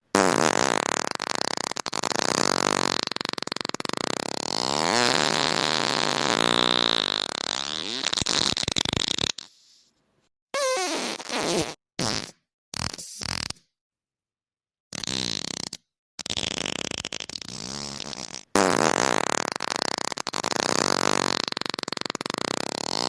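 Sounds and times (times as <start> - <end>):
long rasping fart: 0.1 - 9.8, 10.6 - 13.7, 14.9 - 23.0.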